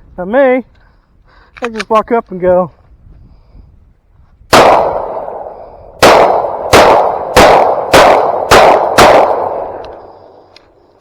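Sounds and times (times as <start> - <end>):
shotgun shots: 4.5 - 10.3.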